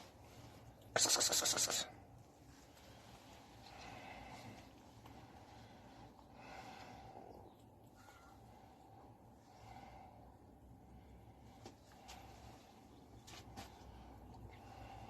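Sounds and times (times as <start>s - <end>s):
cat breathing softly: 2.7s - 12.9s, 13.7s - 15.0s.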